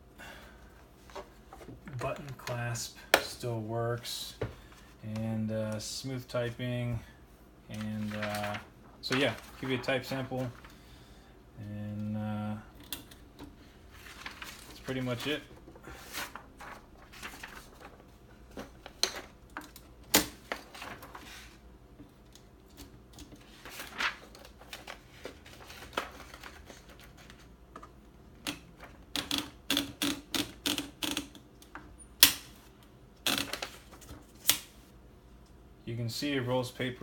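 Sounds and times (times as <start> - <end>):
typewriter mechanism clicking: 29.2 - 31.4.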